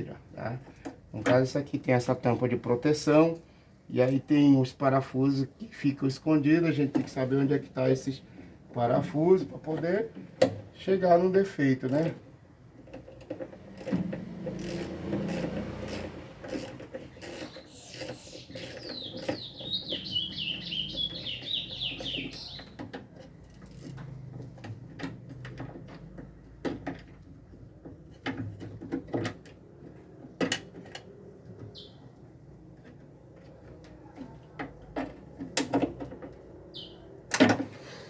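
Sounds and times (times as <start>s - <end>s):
tools and parts rattling: 8.8s - 21.3s, 21.9s - 31.6s
high squeaky chirps: 15.9s - 22.8s.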